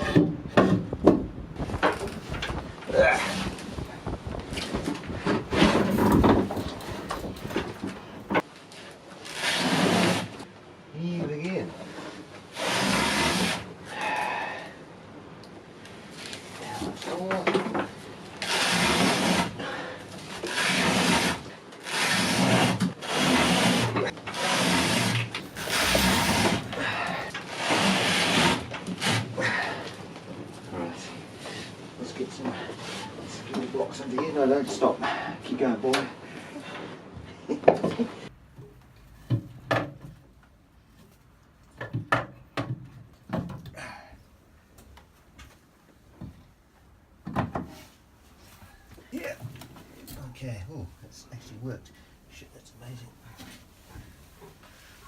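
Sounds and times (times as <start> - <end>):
wooden knocks and clunks: 0.0 - 8.5, 38.5 - 43.8, 47.2 - 47.8
rope rasping through a block: 9.2 - 10.4, 12.0 - 13.7, 18.4 - 29.3.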